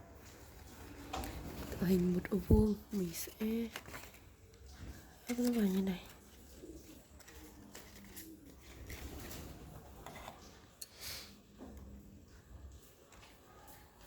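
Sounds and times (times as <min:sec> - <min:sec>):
paper rustling: 0:00.2 - 0:10.7.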